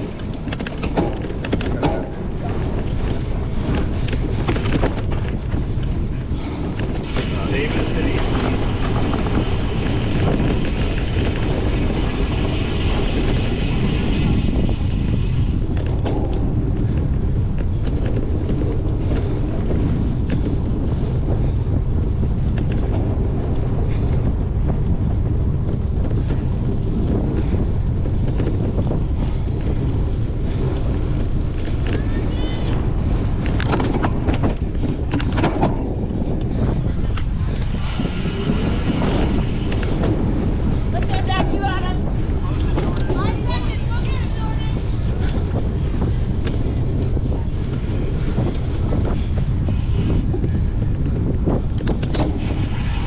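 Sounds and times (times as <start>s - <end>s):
bike rattling and clicking: 0.0s - 53.0s
wind buffeting microphone: 0.0s - 53.0s
hissy noise: 52.4s - 53.0s.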